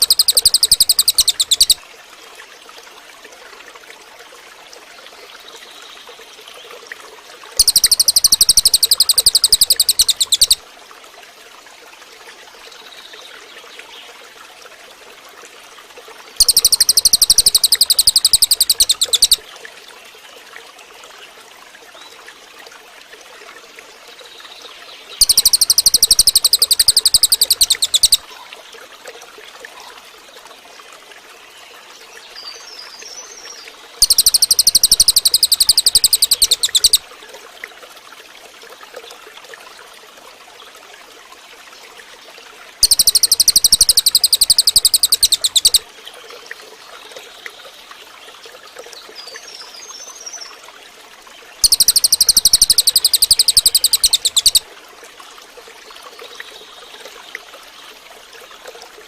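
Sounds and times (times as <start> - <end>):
bird trilling: 0.0 - 1.8, 7.6 - 10.6, 16.4 - 19.4, 25.2 - 28.2, 34.0 - 37.0, 42.8 - 45.8, 51.6 - 54.6
faint steady hiss: 0.0 - 59.0.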